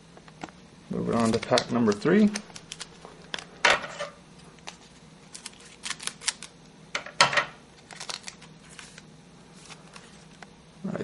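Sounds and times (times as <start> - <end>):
cards clicking and sliding: 1.1 - 3.5, 4.6 - 6.6
wrapper crinkling and tearing: 1.1 - 3.5, 4.6 - 6.6, 7.8 - 10.4.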